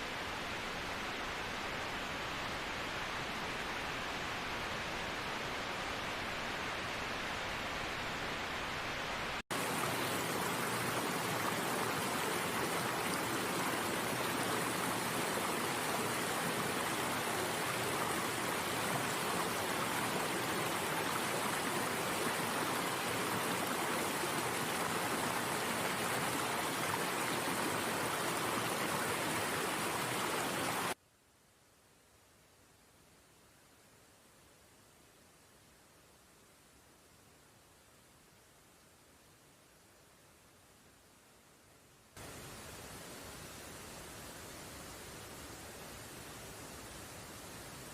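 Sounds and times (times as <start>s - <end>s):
stream water flowing: 0.0s - 31.0s.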